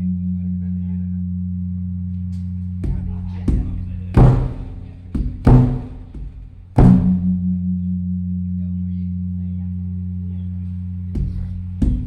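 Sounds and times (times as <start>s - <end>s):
large drum strokes: 2.9s - 7.5s
low humming drum ring: 2.9s - 7.6s.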